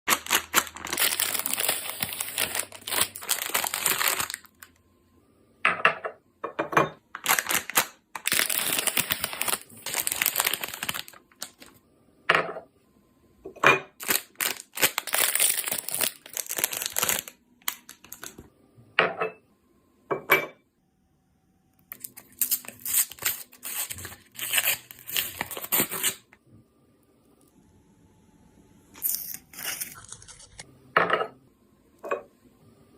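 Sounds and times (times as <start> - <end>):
sharp wrapper rips: 0.1 - 4.6, 7.2 - 11.7, 14.0 - 18.4, 21.9 - 26.3, 29.0 - 30.6
plastic wrapper crinkling: 0.1 - 4.8, 7.1 - 11.8, 14.0 - 18.5, 21.9 - 26.3, 29.0 - 30.6.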